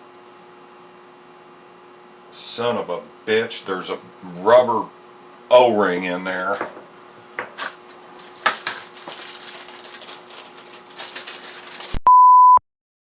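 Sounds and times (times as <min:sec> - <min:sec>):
censor bleep: 0:12.0 - 0:12.6.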